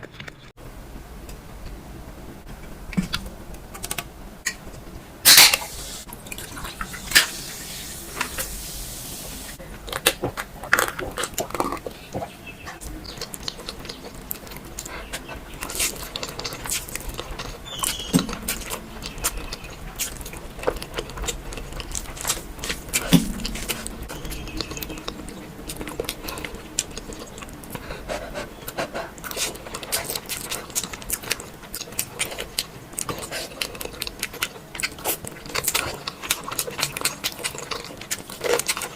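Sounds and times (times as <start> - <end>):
wet chewing: 9.6 - 38.9.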